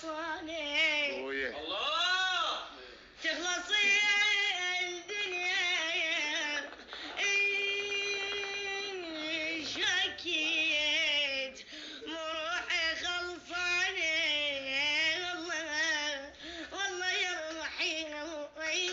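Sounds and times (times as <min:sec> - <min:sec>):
child singing: 0:12.1 - 0:18.9.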